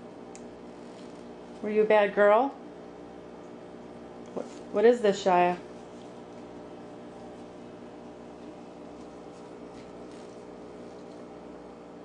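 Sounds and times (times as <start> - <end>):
steady low hum: 0.0 - 12.0
faint soft rustles: 5.7 - 11.4.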